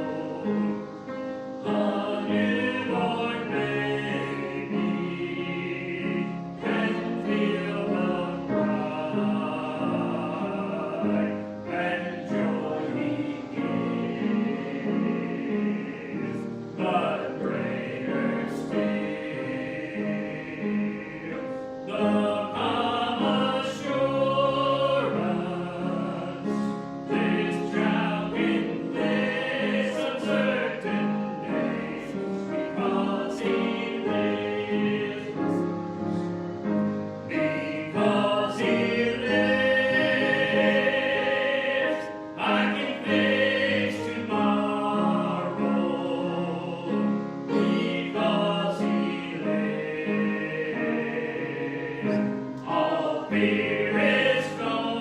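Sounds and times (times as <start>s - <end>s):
choir singing gospel song: 0.0s - 55.0s.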